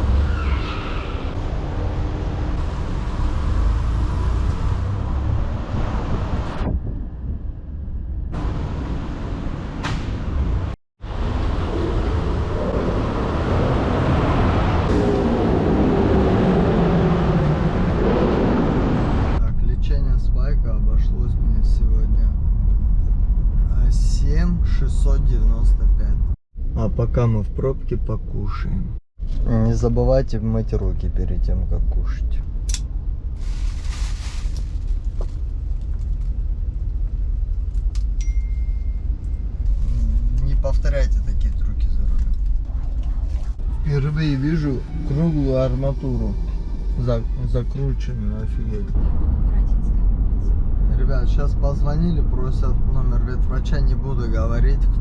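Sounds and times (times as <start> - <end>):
car cabin road and engine rumble: 18.7 - 55.0.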